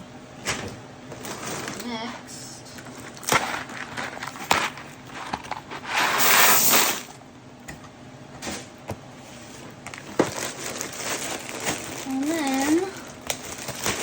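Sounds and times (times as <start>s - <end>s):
dry snack mix pouring: 10.0s - 14.0s.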